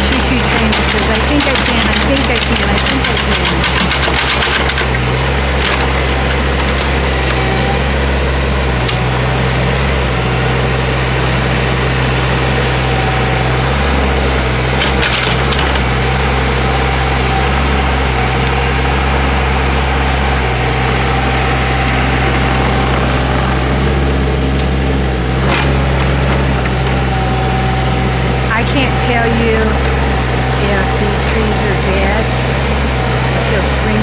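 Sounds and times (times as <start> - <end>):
wood cracking and splintering: 0.0 - 10.1, 12.0 - 28.5
diesel engine under load: 0.0 - 34.0.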